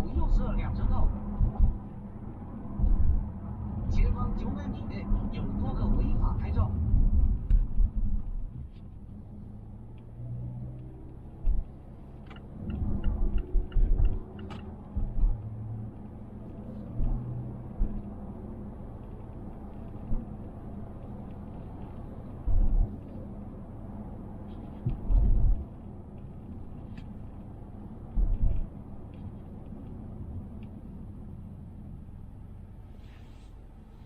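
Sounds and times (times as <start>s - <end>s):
low road rumble: 0.0s - 34.0s
heavy low thuds over bumps: 0.9s - 3.4s, 6.7s - 8.8s, 11.3s - 11.8s, 12.7s - 15.6s, 16.9s - 18.3s, 22.4s - 23.0s, 24.8s - 25.8s, 28.1s - 28.8s.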